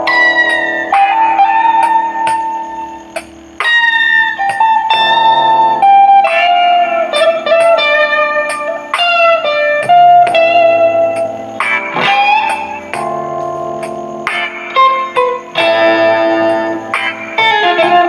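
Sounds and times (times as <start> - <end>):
slow guitar melody: 0.0 - 18.0.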